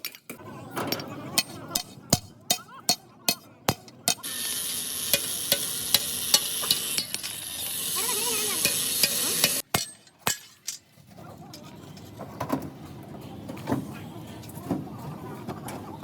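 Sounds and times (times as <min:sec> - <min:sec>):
loud steady hiss: 0:04.2 - 0:09.6.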